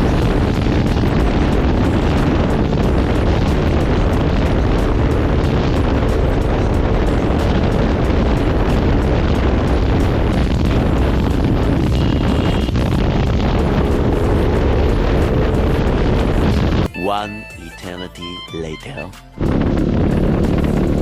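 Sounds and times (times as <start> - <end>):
motorcycle engine: 0.0 - 16.9, 19.4 - 21.0
wind rumble on microphone: 0.0 - 16.9, 19.4 - 21.0
road noise: 0.0 - 17.0.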